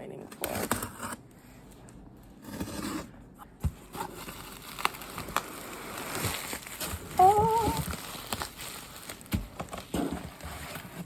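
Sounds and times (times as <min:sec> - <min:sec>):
packaging rustling and scraping: 0:00.3 - 0:11.0.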